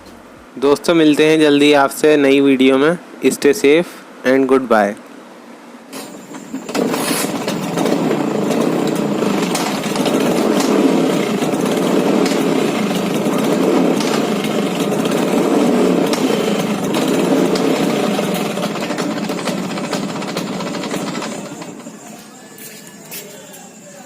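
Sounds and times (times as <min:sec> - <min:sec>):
scooter two-stroke engine running: 0:06.3 - 0:22.3.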